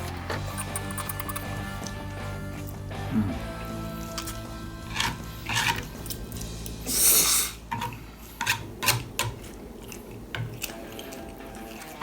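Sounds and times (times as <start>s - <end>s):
chewing smacks: 0.0s - 2.0s, 9.4s - 12.0s
utensil clicks: 0.0s - 2.0s.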